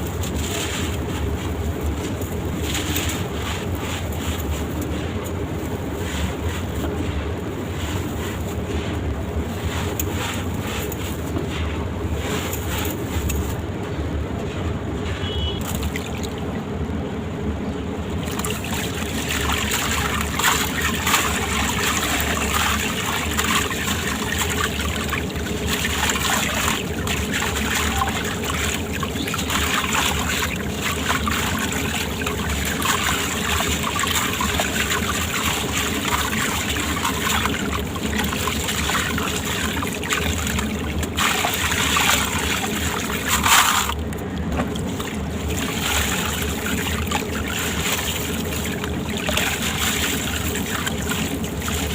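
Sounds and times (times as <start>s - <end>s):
trickling water: 15.5s - 16.8s, 17.9s - 51.9s
wet sand-cement crumbling: 18.2s - 51.9s.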